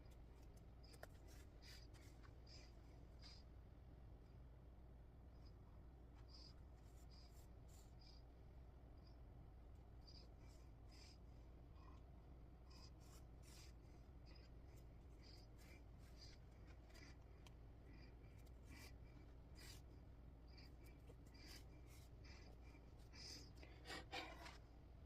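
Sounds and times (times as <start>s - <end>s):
low steady hum: 0.0s - 25.0s
needle and thread scratching fabric: 23.0s - 24.7s.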